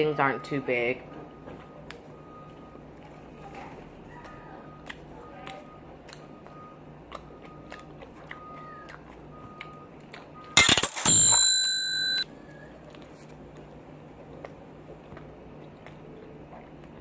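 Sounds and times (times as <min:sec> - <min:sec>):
bell-like ding: 0:10.6 - 0:12.2
phone notification clatter: 0:10.6 - 0:12.2.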